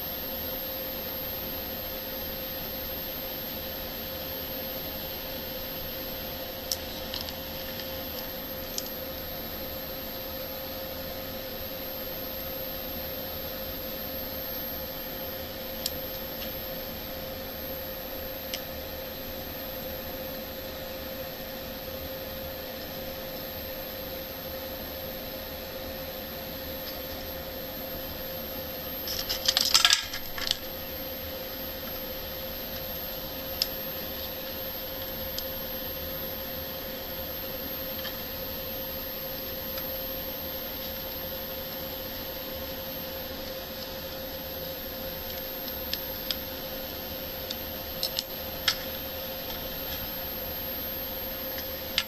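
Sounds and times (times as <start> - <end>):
faint constant tone: 0.0 - 52.0
small hard objects clattering: 29.1 - 30.6.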